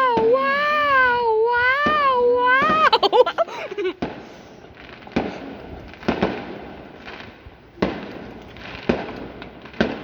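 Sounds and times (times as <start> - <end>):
fireworks bangs echoing: 3.8 - 10.0.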